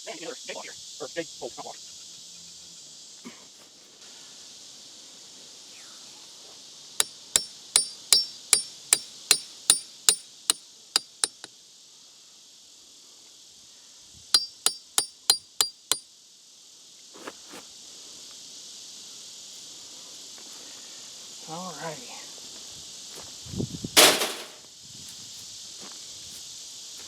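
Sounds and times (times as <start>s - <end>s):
insects buzzing: 0.0s - 27.0s
metal striking metal ringing: 7.0s - 10.2s, 11.0s - 11.5s, 14.4s - 16.0s.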